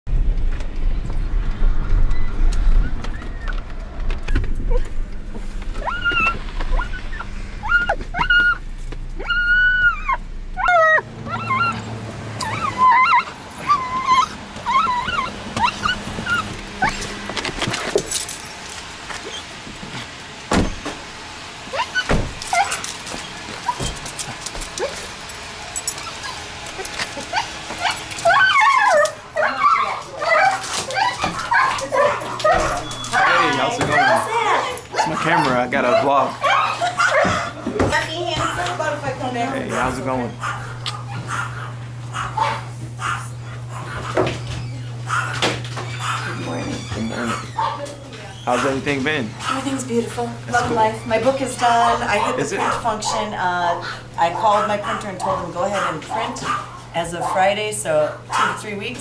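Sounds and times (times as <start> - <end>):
vehicle engine rumbling: 0.1 - 59.0
dog whining: 2.0 - 5.0, 5.6 - 18.3, 19.1 - 19.5, 21.7 - 38.9, 39.5 - 57.6
dog whimpering: 5.6 - 17.8, 19.2 - 19.5, 21.7 - 24.1, 25.9 - 38.9, 39.5 - 58.6
dog yipping: 5.7 - 17.8, 19.2 - 19.5, 21.7 - 24.2, 24.8 - 25.1, 25.8 - 37.7, 39.7 - 49.9, 50.5 - 57.6, 58.3 - 58.6.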